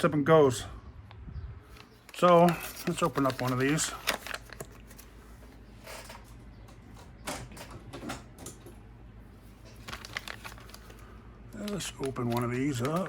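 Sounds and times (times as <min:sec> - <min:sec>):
low steady hum: 0:00.0 - 0:13.0
plastic bag rustling: 0:01.7 - 0:05.4, 0:09.4 - 0:13.0.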